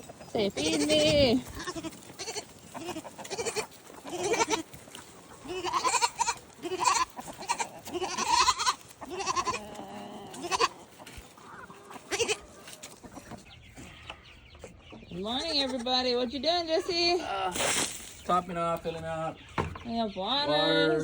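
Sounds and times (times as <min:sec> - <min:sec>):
goats bleating: 0:00.4 - 0:13.0.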